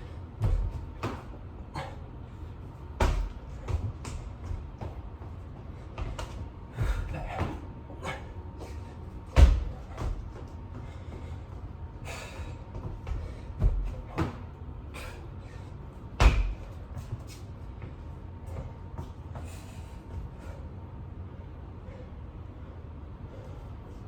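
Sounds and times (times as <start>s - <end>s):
hands and feet thumping on floor: 2.9s - 7.7s, 8.6s - 10.9s, 12.7s - 14.5s, 16.2s - 19.2s.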